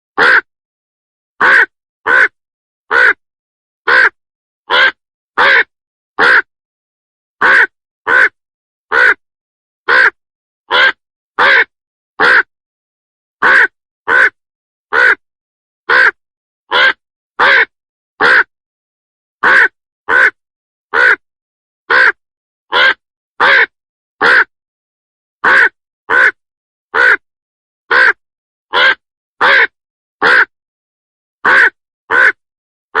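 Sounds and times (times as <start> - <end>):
crow cawing: 0.2 - 0.4, 1.4 - 3.2, 3.9 - 6.5, 7.4 - 9.2, 9.9 - 12.5, 13.4 - 15.2, 15.9 - 18.5, 19.4 - 21.2, 21.9 - 24.5, 25.4 - 26.4, 27.0 - 27.2, 27.9 - 30.5, 31.4 - 32.4.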